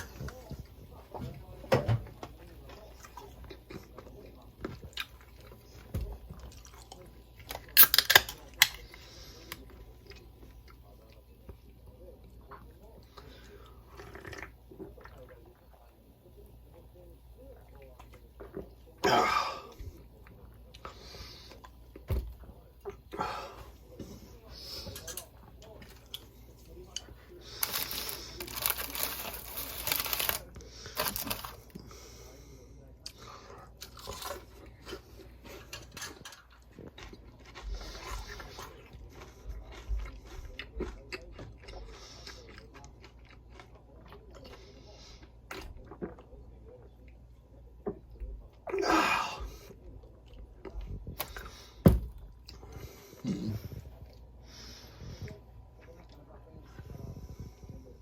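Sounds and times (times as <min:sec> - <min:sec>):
person chewing: 0:22.8 - 0:31.8, 0:33.8 - 0:47.2.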